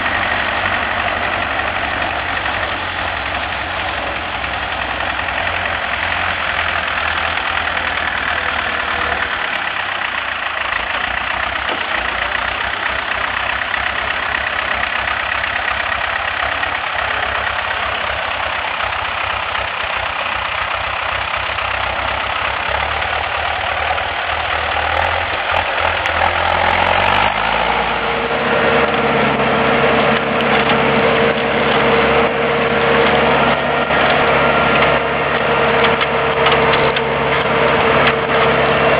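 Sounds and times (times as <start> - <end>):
tractor diesel engine running: 0.0 - 38.9.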